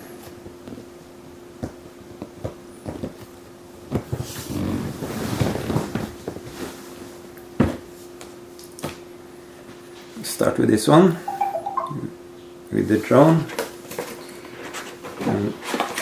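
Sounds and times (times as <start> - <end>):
cardboard boxes tapping and knocking: 1.6 - 3.3
cardboard rustling and scraping: 3.9 - 7.8.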